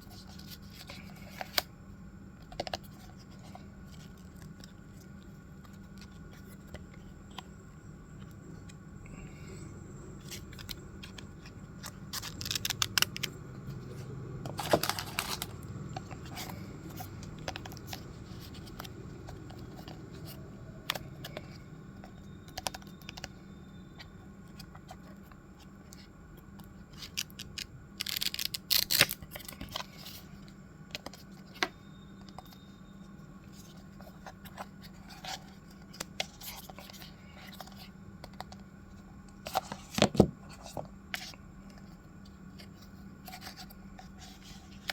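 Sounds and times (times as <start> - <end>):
faint steady hum: 0.0 - 44.9
clicks rustles and scrapes of packaging: 13.9 - 21.6.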